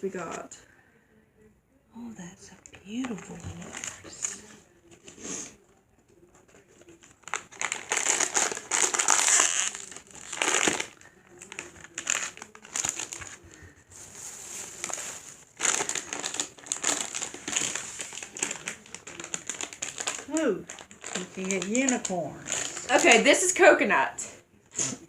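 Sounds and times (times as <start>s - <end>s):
plastic packaging crinkling: 3.0s - 4.5s, 6.4s - 23.6s.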